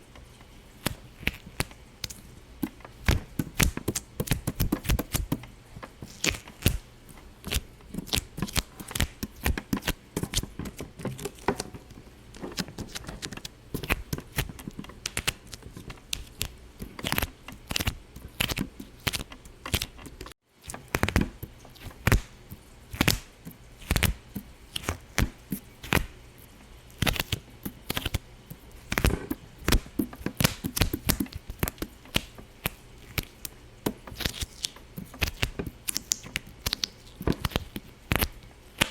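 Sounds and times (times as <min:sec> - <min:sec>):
sharp pops and clicks: 0:00.8 - 0:05.5, 0:28.9 - 0:38.9.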